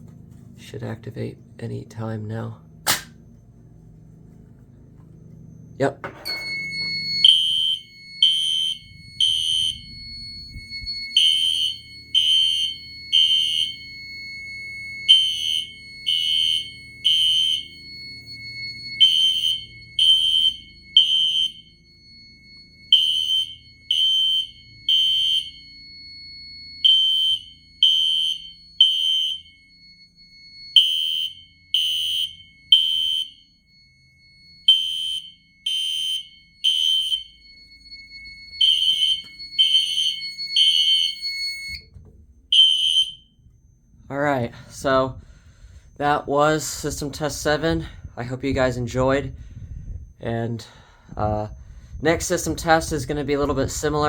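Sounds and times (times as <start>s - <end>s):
fire alarm horn blasts: 0.1s - 54.0s
faint steady high tone: 3.5s - 17.0s, 36.2s - 42.0s.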